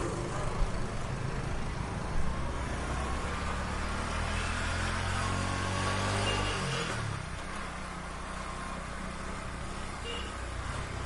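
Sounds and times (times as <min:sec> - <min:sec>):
heavy street traffic: 0:00.0 - 0:11.0.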